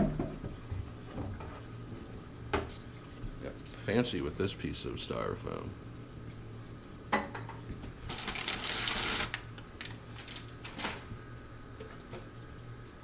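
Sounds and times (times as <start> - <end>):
packing material rustling: 8.1 - 11.0.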